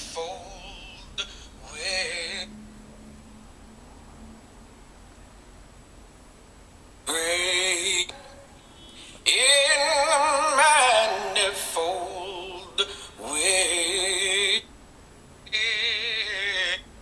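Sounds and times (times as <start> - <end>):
person singing with vibrato: 0.0 - 2.6, 7.0 - 14.7, 15.5 - 17.0.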